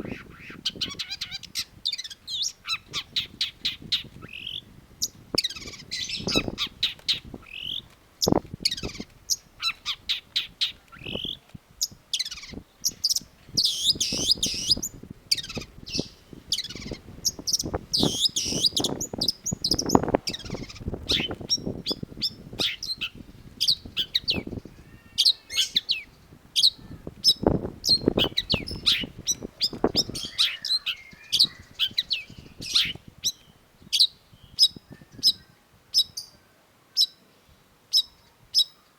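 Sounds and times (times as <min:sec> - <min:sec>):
bird singing chirps and whistles: 0:13.6 - 0:36.3.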